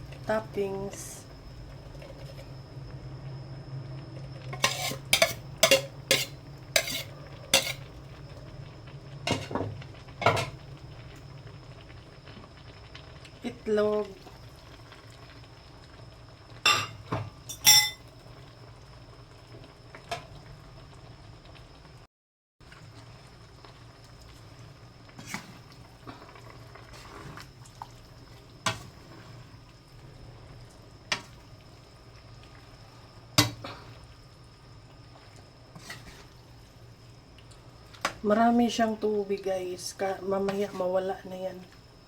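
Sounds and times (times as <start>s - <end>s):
low steady simmer: 0.0s - 42.0s
pot of noodles bubbling: 0.0s - 42.0s
utensils clinking on pot: 4.6s - 7.9s, 16.7s - 18.0s.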